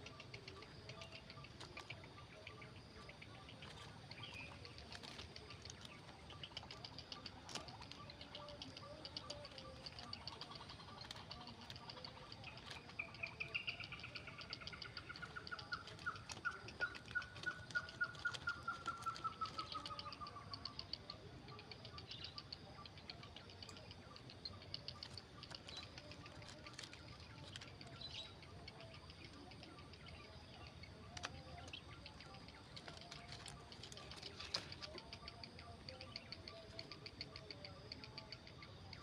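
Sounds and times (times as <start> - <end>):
heron nestlings clicking begging chatter: 0.0 - 21.1, 22.0 - 37.6.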